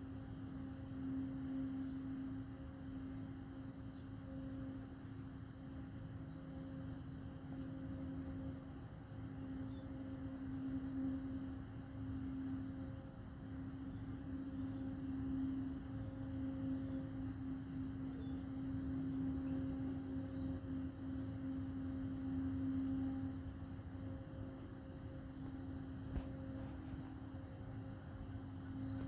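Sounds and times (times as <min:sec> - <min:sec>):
steady drone with higher overtone: 0:07.4 - 0:29.0.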